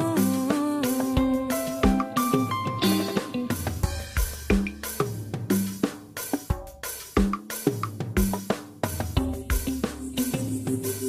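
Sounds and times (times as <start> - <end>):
instrumental melody: 0.0 - 5.6
drum beat: 0.0 - 11.0.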